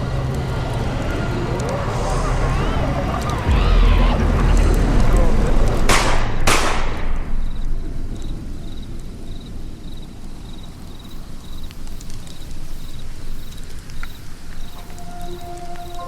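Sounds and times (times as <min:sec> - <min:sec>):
loud sharp crack: 0:00.0 - 0:09.2
low rumbling noise: 0:00.0 - 0:10.9
crickets chirping: 0:07.0 - 0:16.0.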